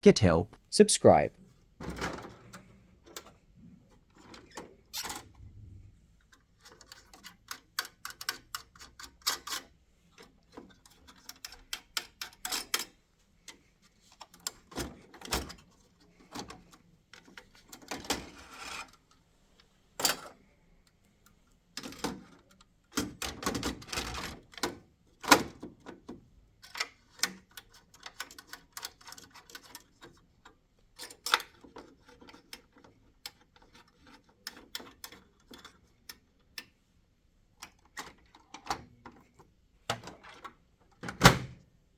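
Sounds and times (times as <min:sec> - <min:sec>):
latches and covers clicking: 0:39.9 - 0:41.6.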